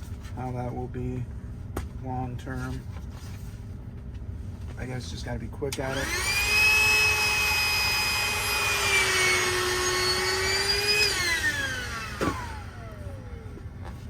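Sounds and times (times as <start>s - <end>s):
electric air pump whining: 5.8s - 14.0s.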